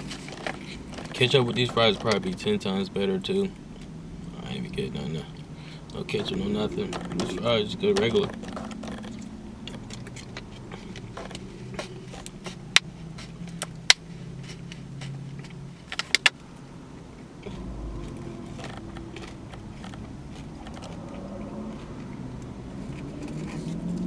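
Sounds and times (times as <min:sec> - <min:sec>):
steady low hum: 0:00.0 - 0:23.0
person chewing: 0:17.4 - 0:22.2.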